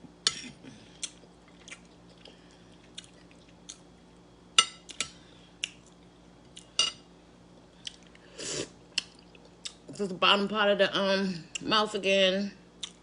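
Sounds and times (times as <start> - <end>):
faint chewing: 0.9 - 3.9.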